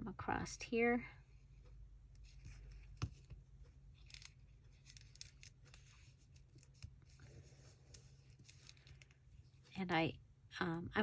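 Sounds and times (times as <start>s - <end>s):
paper rustling and clicking: 4.0s - 9.2s.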